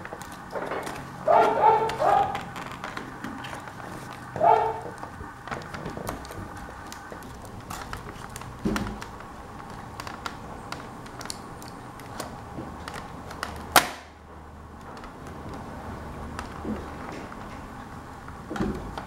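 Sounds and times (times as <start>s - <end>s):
laptop keyboard plastic clicks: 5.0s - 14.1s.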